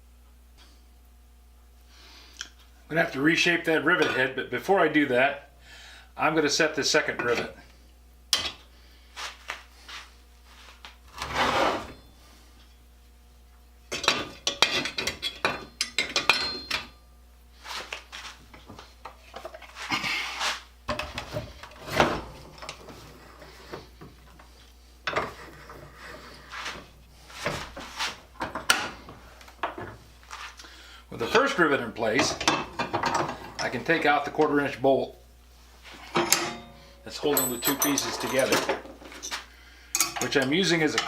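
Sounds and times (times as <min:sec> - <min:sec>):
metal parts and tools clinking: 0:14.0 - 0:16.9, 0:36.1 - 0:41.0.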